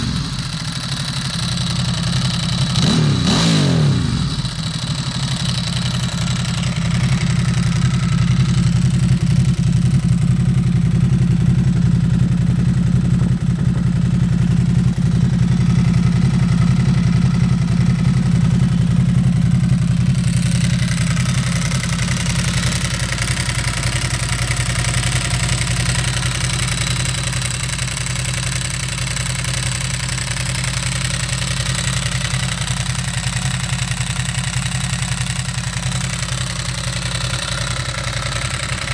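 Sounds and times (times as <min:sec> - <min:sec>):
motorcycle engine idling: 0:00.0 - 0:38.9
dry clutch rattle: 0:18.6 - 0:38.9.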